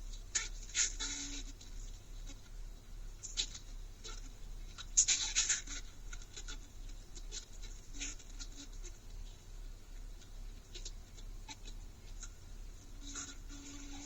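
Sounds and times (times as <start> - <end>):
light scratching and rustling: 0.0 - 14.0
low steady hum: 0.0 - 14.0.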